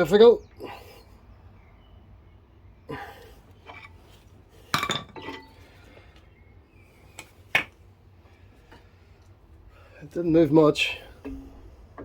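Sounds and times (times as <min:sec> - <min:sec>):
metal clinks and knocks: 0:04.7 - 0:05.6.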